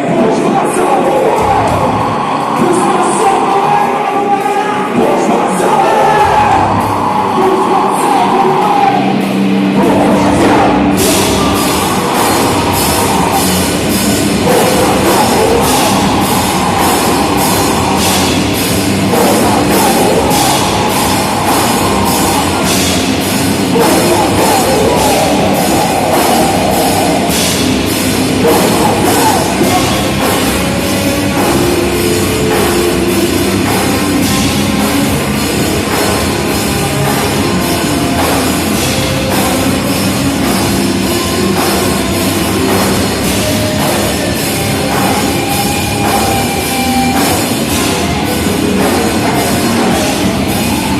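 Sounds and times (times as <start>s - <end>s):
bass guitar: 0.0s - 50.9s
distorted guitar: 0.0s - 50.9s
drums: 0.0s - 50.9s
cymbal hits: 10.8s - 50.9s.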